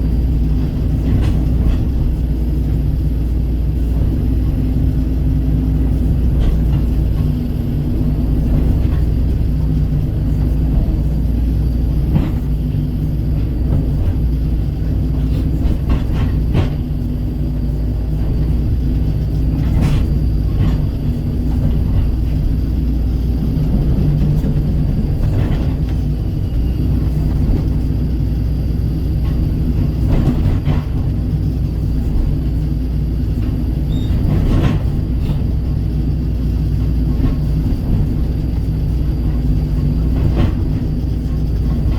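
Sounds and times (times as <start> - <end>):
excavator diesel engine running: 0.0 - 41.9
excavator bucket knocks and clanks: 0.6 - 2.2, 6.1 - 7.4, 8.2 - 17.0, 18.2 - 27.8, 29.2 - 31.4, 33.4 - 41.9.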